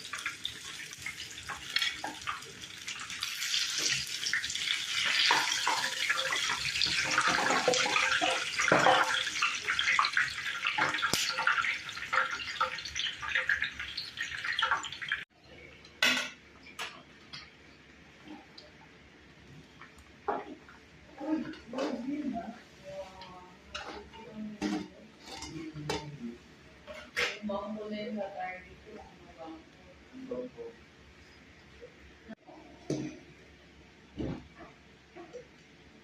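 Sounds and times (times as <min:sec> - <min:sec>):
water running in sink: 0:00.0 - 0:15.3
dishes clattering: 0:05.0 - 0:12.8, 0:16.0 - 0:17.5, 0:23.7 - 0:26.2.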